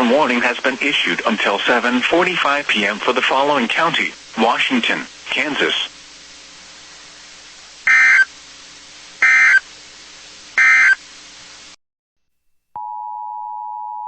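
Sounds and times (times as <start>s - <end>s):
digital data bursts: 7.9s - 8.3s, 9.2s - 9.6s, 10.6s - 11.0s.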